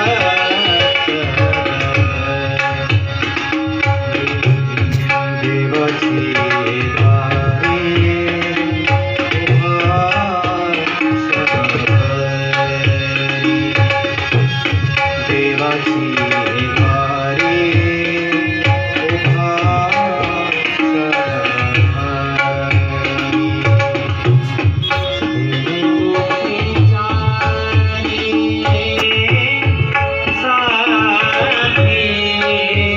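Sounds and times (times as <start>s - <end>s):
person singing a melody: 0.0s - 3.1s, 15.2s - 24.0s
tabla playing a steady rhythm: 0.0s - 32.9s.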